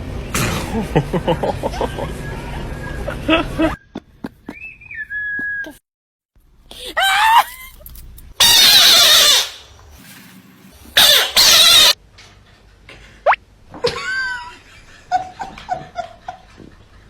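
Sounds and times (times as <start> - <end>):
loud screaming cries: 6.9 - 7.8, 8.4 - 9.6, 11.0 - 12.0.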